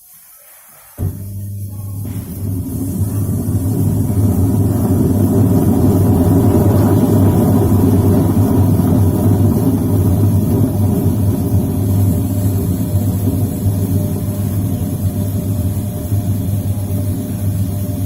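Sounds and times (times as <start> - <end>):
washing machine motor humming: 1.0 - 18.0.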